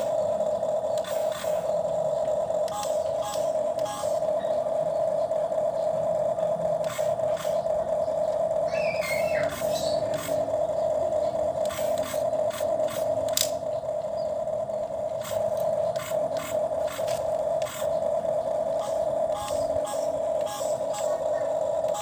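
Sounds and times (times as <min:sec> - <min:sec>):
toy electric motor humming: 0:00.0 - 0:22.0
plastic clicks and scrapes: 0:15.2 - 0:17.9.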